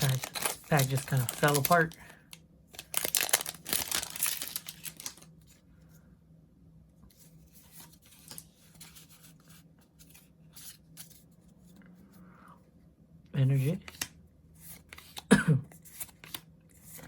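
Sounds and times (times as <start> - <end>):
cards rustling and tapping: 0.0 - 2.1, 13.6 - 17.0
foil wrapper crinkling and tearing: 0.0 - 2.1, 2.8 - 5.3.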